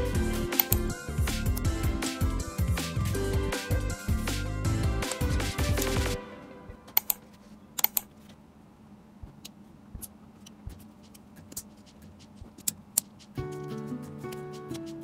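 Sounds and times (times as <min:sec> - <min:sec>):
background music: 0:00.0 - 0:07.4, 0:13.4 - 0:15.0.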